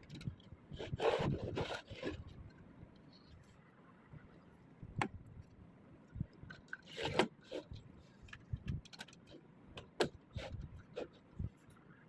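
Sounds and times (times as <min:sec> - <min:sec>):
plastic clicks and rattles: 0:00.0 - 0:00.5, 0:08.2 - 0:10.2.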